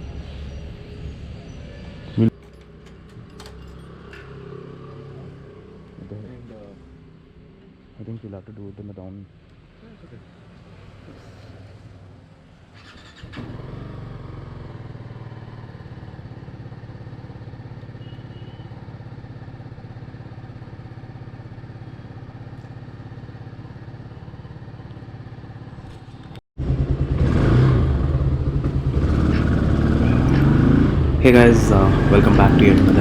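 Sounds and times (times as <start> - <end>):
motorcycle engine idling: 14.0 - 33.0.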